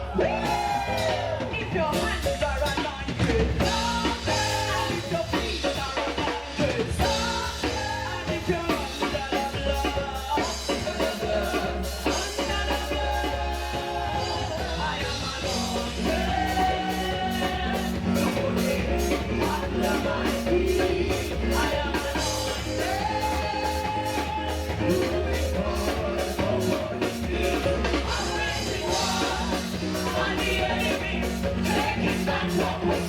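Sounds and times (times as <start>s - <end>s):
bass and guitar: 0.0s - 33.0s
drum kit beat: 0.0s - 33.0s
people singing: 0.0s - 33.0s.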